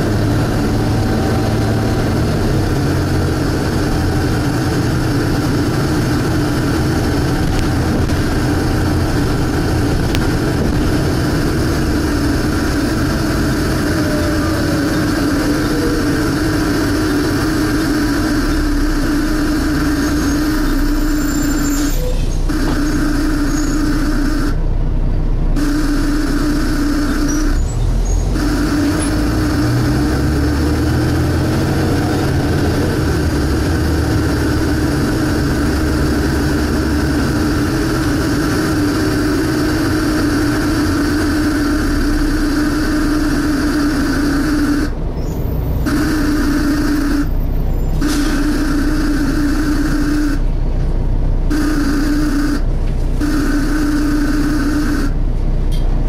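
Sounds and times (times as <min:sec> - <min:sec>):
bus engine running: 0:00.0 - 0:56.0
loud engine suction noise: 0:00.0 - 0:56.0.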